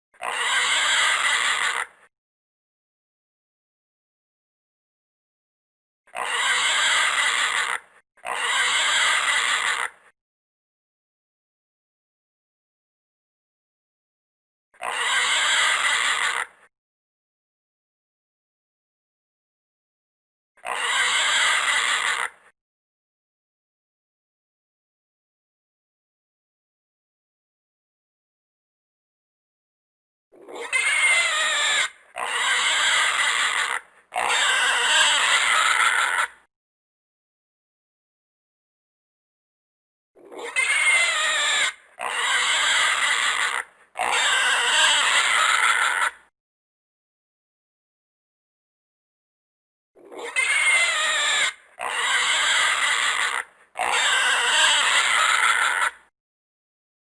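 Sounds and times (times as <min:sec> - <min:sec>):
animal calling: 0:00.2 - 0:02.0, 0:06.1 - 0:10.1, 0:14.8 - 0:16.7, 0:20.6 - 0:22.5, 0:30.3 - 0:36.4, 0:40.2 - 0:46.3, 0:50.0 - 0:56.1.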